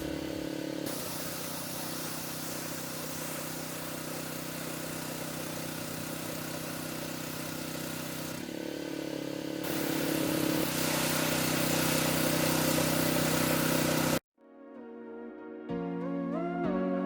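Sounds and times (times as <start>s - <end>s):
water spraying hiss: 0.0s - 6.8s, 9.6s - 14.2s
pressure washer engine running: 0.0s - 14.2s.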